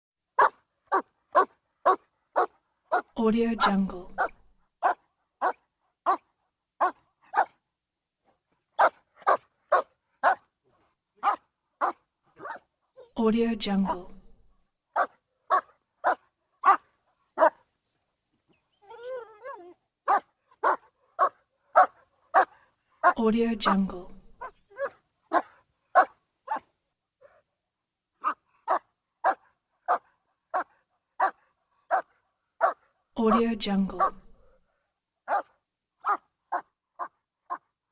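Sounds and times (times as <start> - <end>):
dog barking: 0.4 - 3.1, 4.2 - 7.6, 8.8 - 10.4, 11.2 - 12.7, 15.0 - 17.6, 20.1 - 23.2, 24.4 - 27.4, 28.2 - 32.8, 34.0 - 34.2, 35.3 - 37.7.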